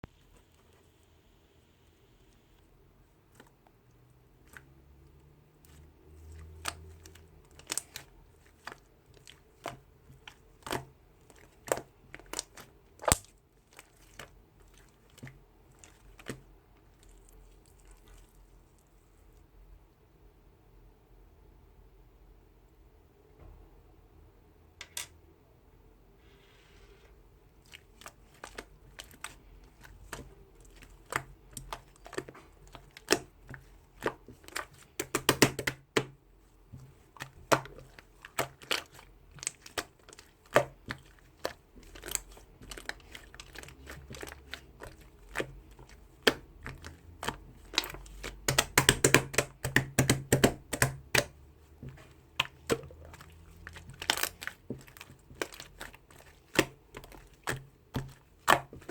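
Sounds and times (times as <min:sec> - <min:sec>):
handling crinkling and clicks: 0:36.8 - 0:58.9.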